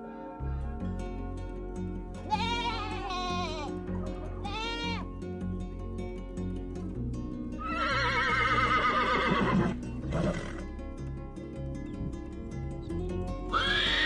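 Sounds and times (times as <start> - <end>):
background music: 0.0 - 14.0
horse whinnying: 7.6 - 10.6, 13.5 - 14.0.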